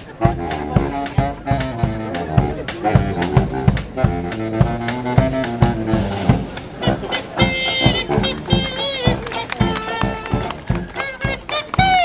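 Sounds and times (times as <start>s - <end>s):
marching band playing jazz: 0.0s - 12.0s.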